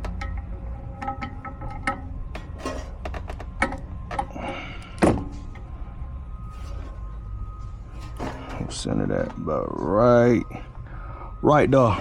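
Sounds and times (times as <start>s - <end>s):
metal parts clicking and clinking: 0.0s - 4.4s
metal scraping: 0.0s - 4.6s, 5.2s - 10.8s.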